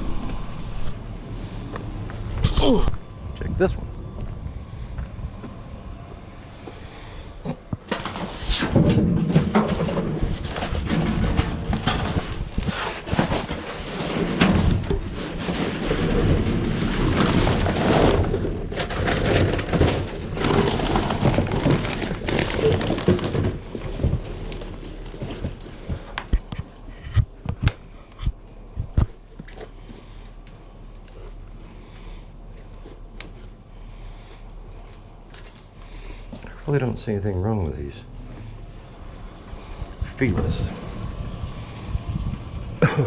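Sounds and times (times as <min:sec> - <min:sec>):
trash rustling and crackling: 0:04.1 - 0:43.0.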